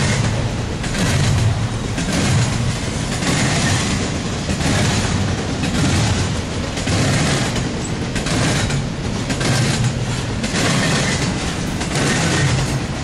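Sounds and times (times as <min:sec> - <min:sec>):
freight train wheels rumbling: 0:00.0 - 0:13.0.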